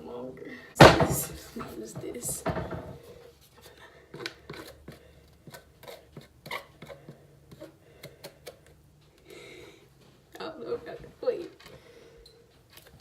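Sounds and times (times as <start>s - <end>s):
clicks and scrapes on hard surface: 4.1s - 8.8s.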